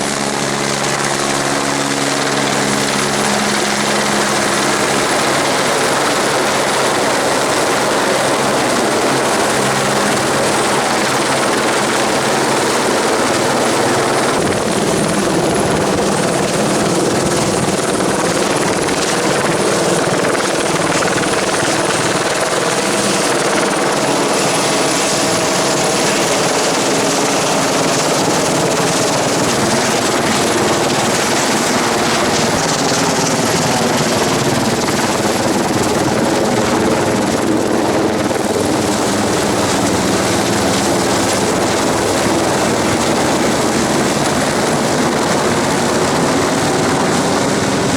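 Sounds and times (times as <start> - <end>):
helicopter engine and rotor: 0.0 - 47.9.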